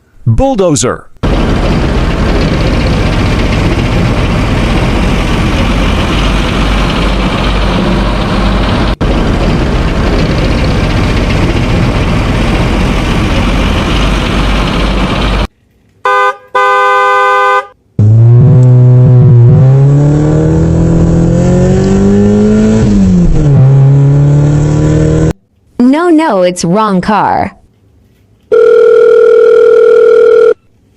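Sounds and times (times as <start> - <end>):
toy horn toot: 16.1 - 17.8.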